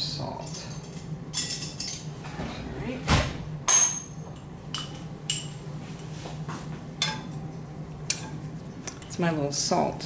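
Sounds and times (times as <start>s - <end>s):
metal spoons clinking: 0.4s - 2.1s, 3.7s - 5.6s.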